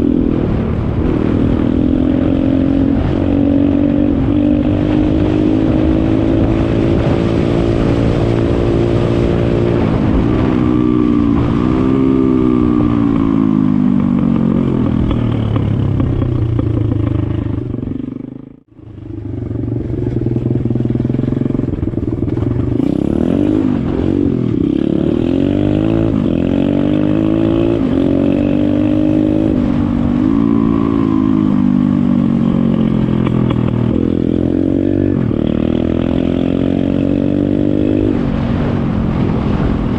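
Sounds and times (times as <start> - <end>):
pit bike engine revving: 0.0 - 39.9.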